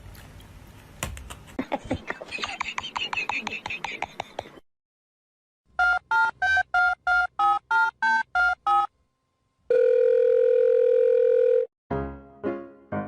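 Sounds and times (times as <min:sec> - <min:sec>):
telephone ringing tone: 0:09.7 - 0:11.7
piano notes: 0:11.9 - 0:13.0.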